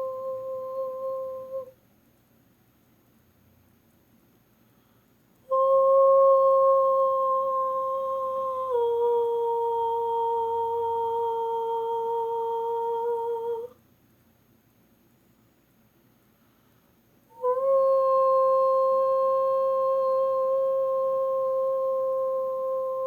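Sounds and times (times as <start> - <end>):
person humming held note: 0.0 - 1.8, 5.5 - 13.8, 17.3 - 23.0.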